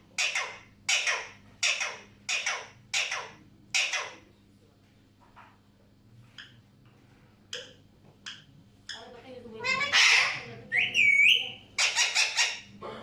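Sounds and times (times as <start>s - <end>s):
parrot harsh calls: 0.2s - 4.3s, 9.6s - 12.7s.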